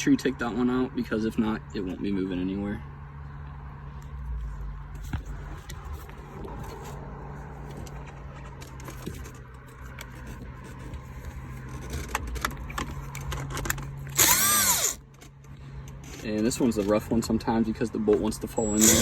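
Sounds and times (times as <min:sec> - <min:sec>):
steady low hum: 0:00.0 - 0:19.0
tools clicking and scraping: 0:07.6 - 0:17.0, 0:18.6 - 0:19.0.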